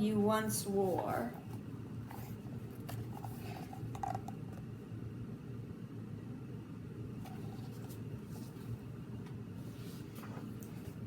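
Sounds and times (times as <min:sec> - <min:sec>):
low room hum: 0:00.0 - 0:11.0.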